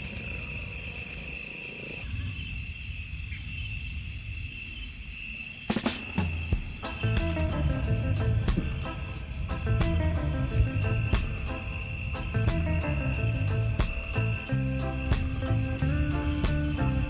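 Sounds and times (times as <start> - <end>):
background music: 6.1 - 17.0.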